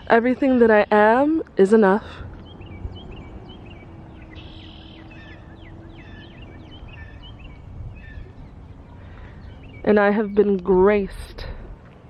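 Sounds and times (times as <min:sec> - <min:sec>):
low outdoor rumble: 0:00.0 - 0:12.0
songbirds chirping: 0:00.0 - 0:12.0.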